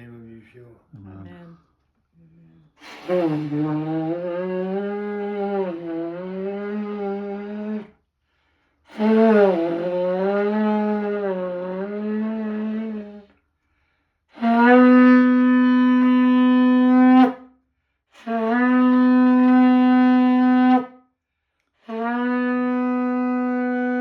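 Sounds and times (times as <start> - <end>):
shofar blasts: 2.8 - 7.9, 8.9 - 13.3, 14.4 - 17.4, 18.2 - 20.9, 21.8 - 24.0.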